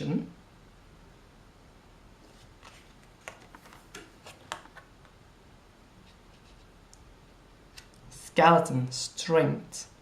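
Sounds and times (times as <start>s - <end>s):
cards being flipped: 2.3s - 5.2s.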